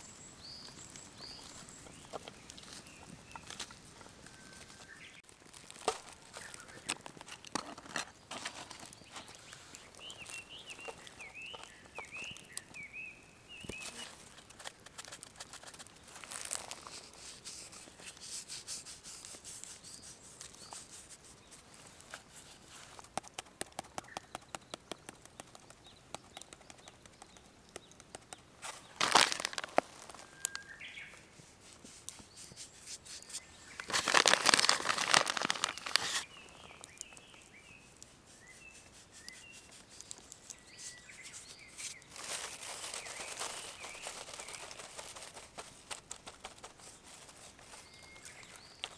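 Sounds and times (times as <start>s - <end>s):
small bird chirping: 0.0s - 5.2s, 8.8s - 14.3s, 23.8s - 31.4s, 32.1s - 48.9s
sharp clicks and crackles: 33.8s - 37.4s.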